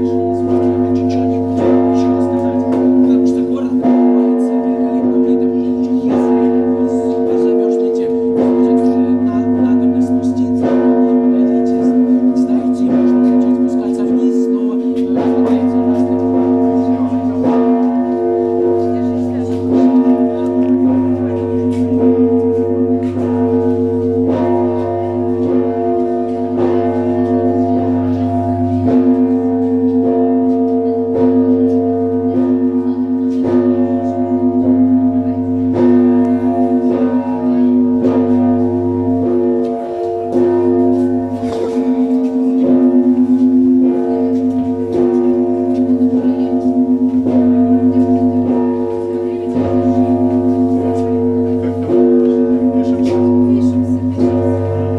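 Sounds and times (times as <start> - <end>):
church bells ringing: 0.0 - 54.9
hum of large bells: 0.0 - 54.9.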